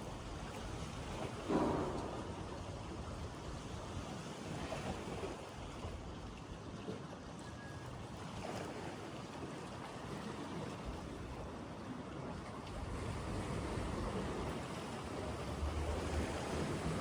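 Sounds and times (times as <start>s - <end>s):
lake water lapping: 0.0s - 17.0s.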